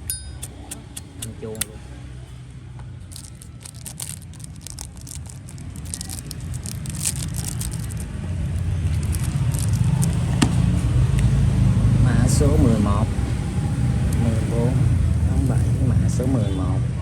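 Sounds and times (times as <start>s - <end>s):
vehicle engine rumble approaching: 2.2s - 17.0s
light clicks and rattles: 3.1s - 10.4s.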